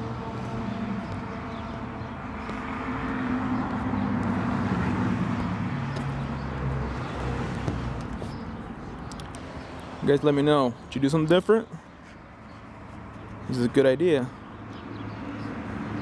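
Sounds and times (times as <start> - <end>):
motor vehicle passing by: 0.0 - 10.2, 14.5 - 16.0.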